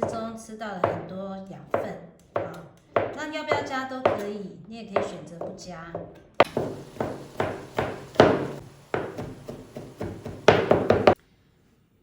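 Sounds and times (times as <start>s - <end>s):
knife chopping on cutting board: 6.4s - 11.2s.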